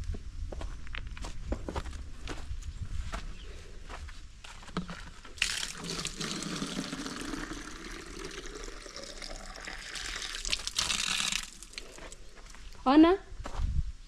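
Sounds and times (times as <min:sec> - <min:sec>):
water filling a container: 0:05.4 - 0:12.2.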